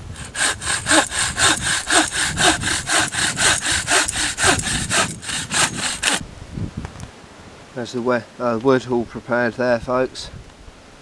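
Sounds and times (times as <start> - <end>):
hand saw cutting wood: 0.0 - 6.2.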